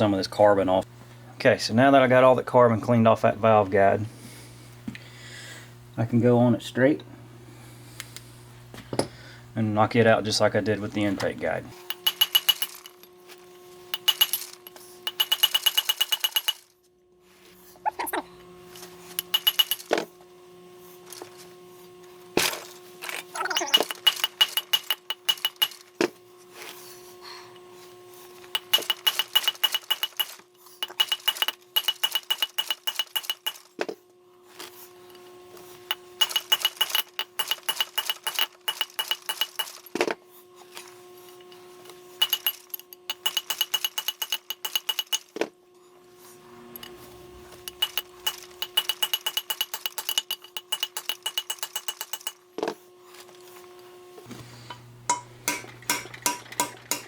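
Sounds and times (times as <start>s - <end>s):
hammer tapping metal punch: 11.8s - 12.9s, 14.0s - 16.6s, 19.2s - 19.9s, 23.5s - 25.8s, 28.6s - 33.7s, 35.9s - 39.8s, 42.2s - 45.3s, 47.5s - 52.4s, 54.7s - 57.0s.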